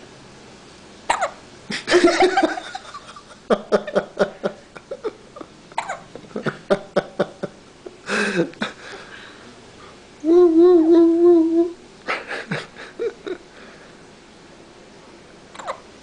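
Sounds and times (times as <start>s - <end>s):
people laughing: 12.1s - 13.4s.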